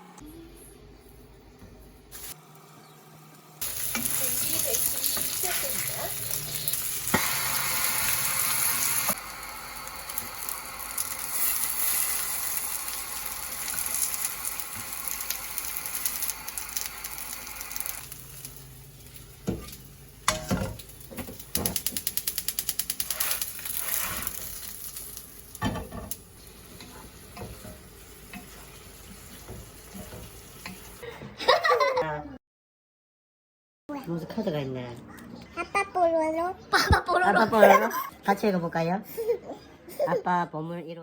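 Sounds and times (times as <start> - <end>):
food sizzling in a frying pan: 2.1 - 2.4, 3.6 - 31.0
kitchen knocks and clatter: 19.4 - 22.1.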